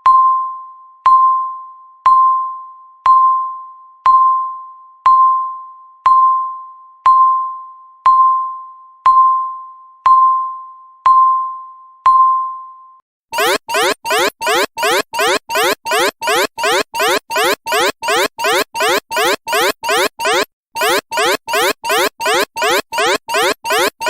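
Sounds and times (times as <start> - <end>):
countdown timer beeping: 13.4 - 24.0.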